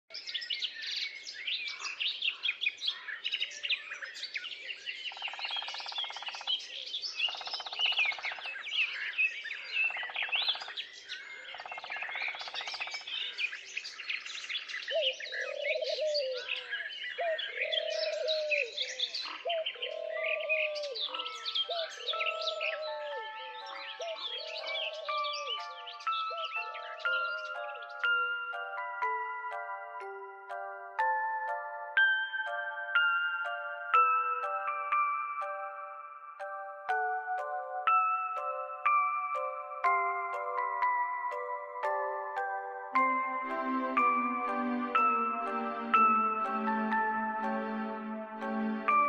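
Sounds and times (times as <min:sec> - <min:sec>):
songbirds chirping and singing: 0:00.1 - 0:49.0
rapid bird trills: 0:05.0 - 0:28.5
dove cooing: 0:14.9 - 0:27.6
steady musical tones: 0:25.6 - 0:49.0.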